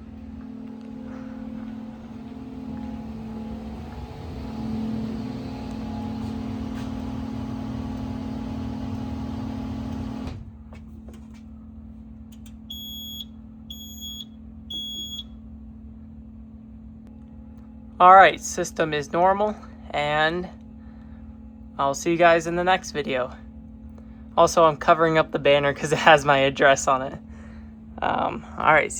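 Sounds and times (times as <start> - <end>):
steady hum with hiss: 0.0 - 28.9.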